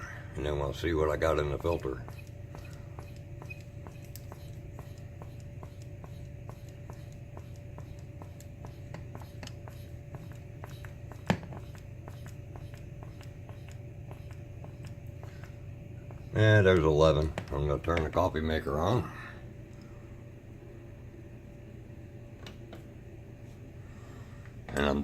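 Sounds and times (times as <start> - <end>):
steady hum: 0.0 - 25.0.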